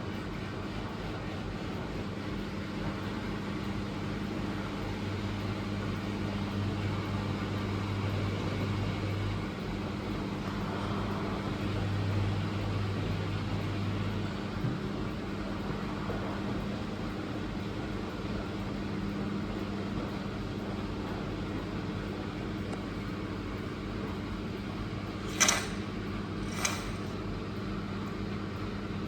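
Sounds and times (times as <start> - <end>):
washing machine hum: 0.0 - 29.0.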